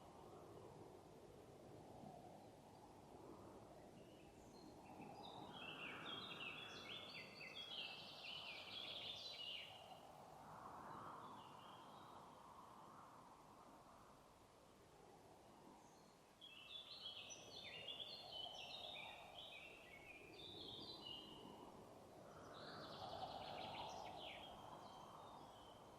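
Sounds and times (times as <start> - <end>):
forest background rustle: 0.0 - 25.9
songbird singing: 3.7 - 13.0, 15.7 - 25.9.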